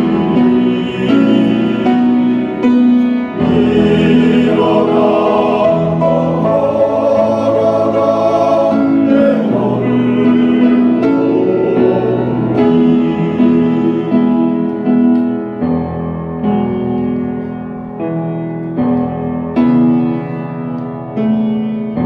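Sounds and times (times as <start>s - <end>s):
choir singing a hymn: 0.0s - 15.6s
instrumental accompaniment: 0.0s - 22.0s.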